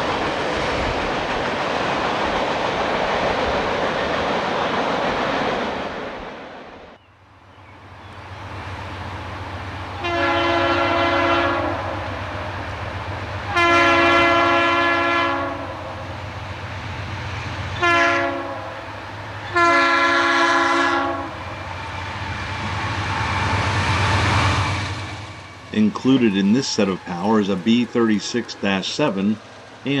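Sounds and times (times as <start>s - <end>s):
locomotive air horn blasts: 10.0s - 12.4s, 13.4s - 16.1s, 17.8s - 21.5s.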